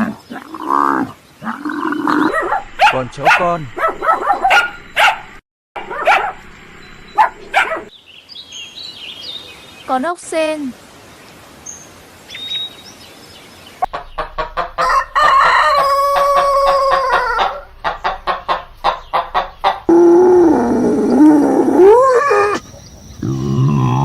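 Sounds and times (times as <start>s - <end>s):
chickens clucking: 13.8s - 19.9s
rooster crowing: 14.8s - 17.8s.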